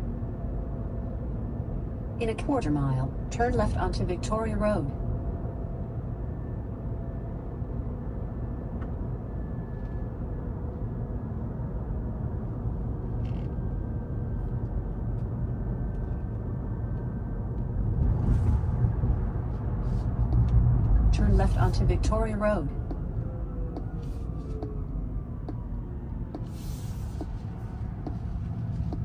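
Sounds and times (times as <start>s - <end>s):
low road rumble: 11.8s - 29.0s.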